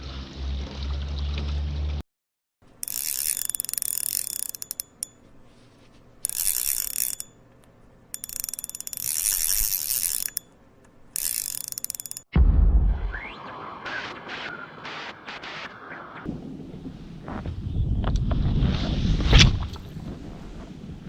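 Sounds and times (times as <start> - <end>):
fishing reel drag clicking: 2.8 - 5.3, 6.2 - 12.3.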